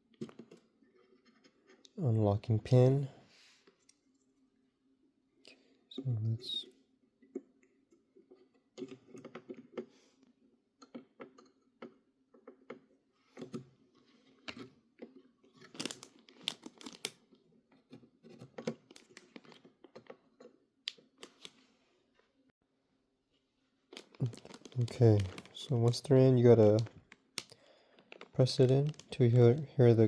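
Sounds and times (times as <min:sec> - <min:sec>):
rustling handling noises: 0:13.2 - 0:22.3, 0:23.3 - 0:30.0.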